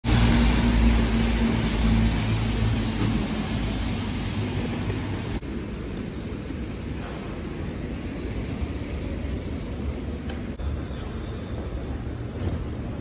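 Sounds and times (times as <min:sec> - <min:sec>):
vehicle engine hum: 0:00.0 - 0:10.7
steady hiss background: 0:03.4 - 0:11.4.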